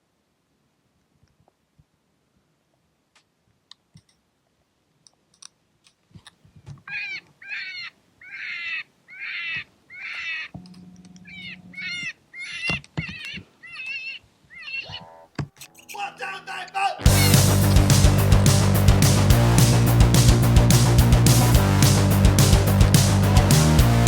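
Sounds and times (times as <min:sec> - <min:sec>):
crow-like cawing: 0:06.9 - 0:10.5.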